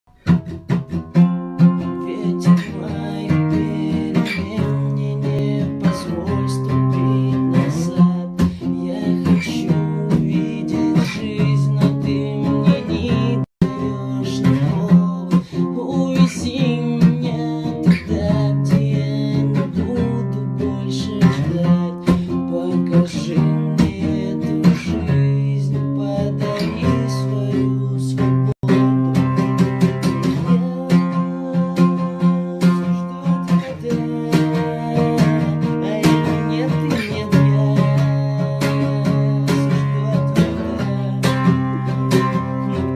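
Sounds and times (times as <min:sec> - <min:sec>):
song with strummed guitar: 0:00.1 - 0:42.9.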